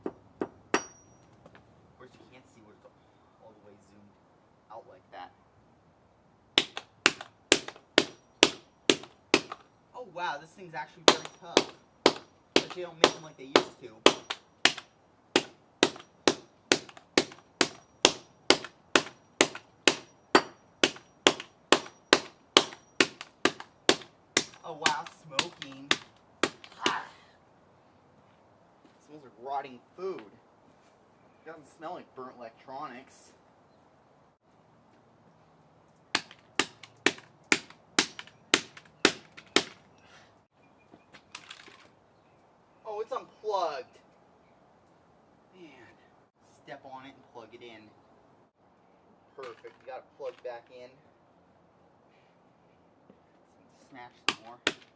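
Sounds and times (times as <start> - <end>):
hammer bouncing knock: 0.0 - 1.1, 6.6 - 9.6, 11.1 - 27.0, 36.1 - 39.8
hammer striking power cord: 11.1 - 27.0.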